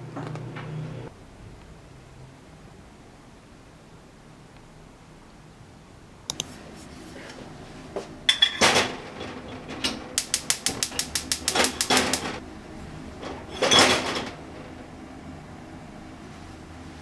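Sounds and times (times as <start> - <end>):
keyboard typing: 10.2 - 12.4.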